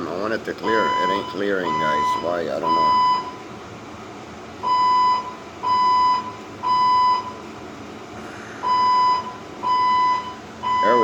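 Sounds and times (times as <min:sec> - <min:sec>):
fire alarm beeps: 0:00.6 - 0:03.4, 0:04.6 - 0:07.4, 0:08.6 - 0:11.0.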